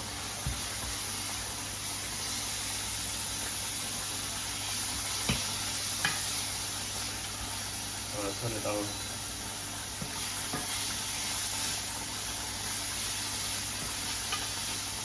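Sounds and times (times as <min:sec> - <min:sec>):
meat sizzling in a frying pan: 0:00.0 - 0:15.0.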